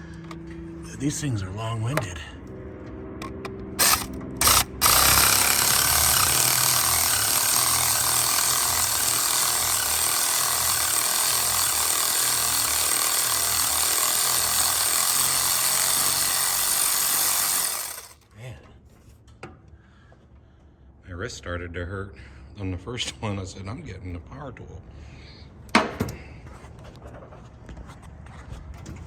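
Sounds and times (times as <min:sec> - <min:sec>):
ratchet wrench clicking: 0:03.8 - 0:18.2.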